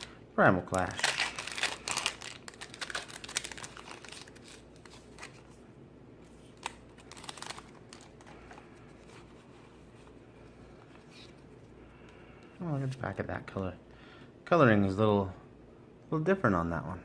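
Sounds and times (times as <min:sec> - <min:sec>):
foil wrapper rustling and crinkling: 0:00.7 - 0:05.6, 0:06.3 - 0:09.4.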